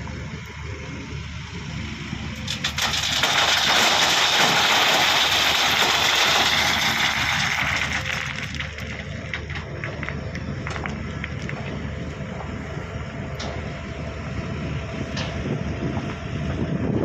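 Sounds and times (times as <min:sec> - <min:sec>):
diesel engine running under load: 0:00.0 - 0:17.0
rattling gravel rush: 0:02.4 - 0:13.9.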